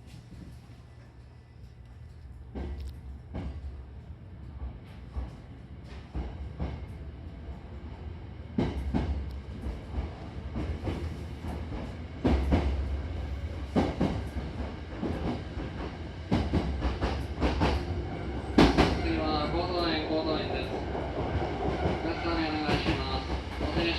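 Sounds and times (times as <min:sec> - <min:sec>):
train rumbling: 0:00.0 - 0:23.9
train wheels clacking over rail joints: 0:13.7 - 0:17.9, 0:18.6 - 0:19.0.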